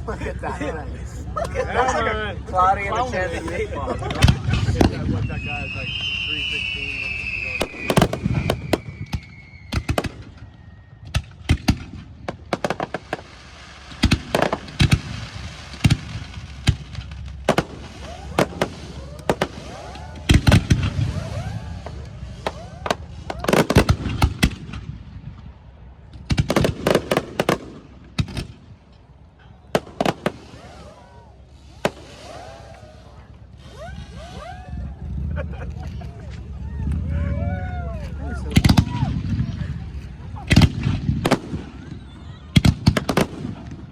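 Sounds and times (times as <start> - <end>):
fireworks sharp reports: 0.0 - 43.9
firework whistling tones: 4.1 - 11.5, 12.9 - 24.8, 29.4 - 35.6, 36.4 - 43.8.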